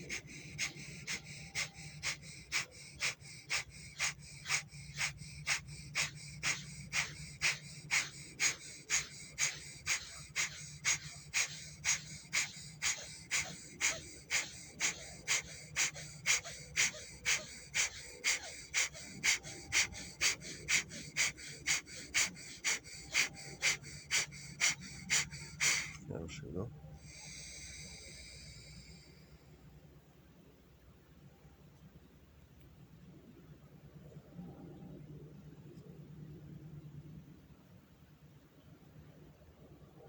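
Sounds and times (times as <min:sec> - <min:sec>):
forceful nasal breathing: 0:00.0 - 0:29.4.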